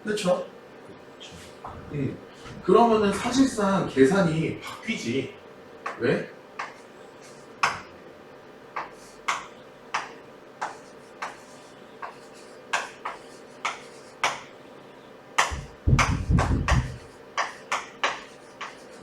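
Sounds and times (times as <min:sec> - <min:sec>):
pen tapping on writing surface: 0:08.8 - 0:11.4, 0:12.0 - 0:14.4, 0:15.4 - 0:18.8
low rubbing rumble: 0:15.5 - 0:17.1.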